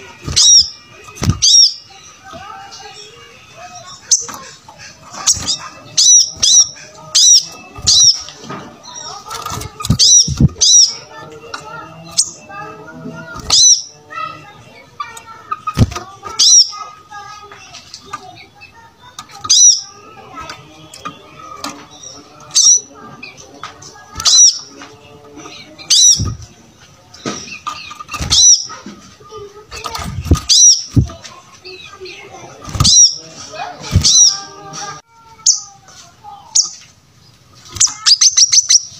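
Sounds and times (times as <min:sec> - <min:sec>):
low background noise: 0:00.0 - 0:38.9
soft bird twittering: 0:00.0 - 0:38.9
bird chirping sharply: 0:00.2 - 0:02.2, 0:05.2 - 0:11.2, 0:13.3 - 0:14.9, 0:18.7 - 0:22.9, 0:27.2 - 0:28.8, 0:29.9 - 0:31.1, 0:37.8 - 0:38.9.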